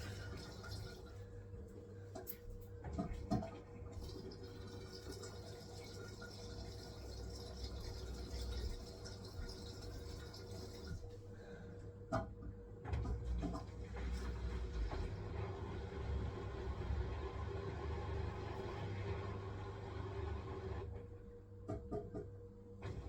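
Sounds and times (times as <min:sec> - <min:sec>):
water running in drum: 0:00.0 - 0:01.2, 0:03.2 - 0:11.2
washing machine humming: 0:00.0 - 0:23.0.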